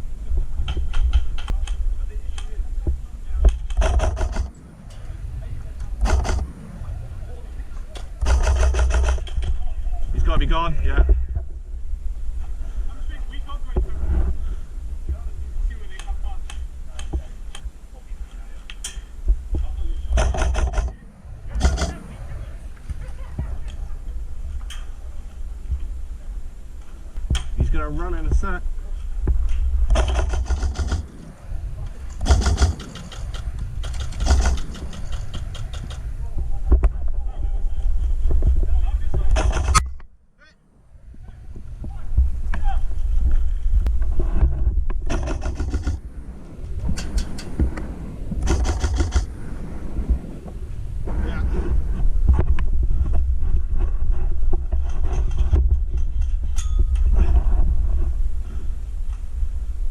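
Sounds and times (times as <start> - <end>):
wind rumble on microphone: 0.0 - 40.1, 40.7 - 59.9
airsoft gun firing bursts: 3.8 - 4.5, 8.2 - 9.3, 20.2 - 20.9, 29.9 - 31.1, 32.2 - 35.4, 45.1 - 46.0, 48.4 - 49.3.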